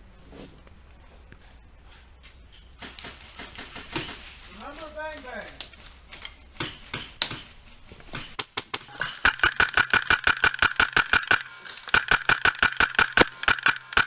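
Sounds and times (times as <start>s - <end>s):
airsoft gun shots: 8.9s - 14.0s.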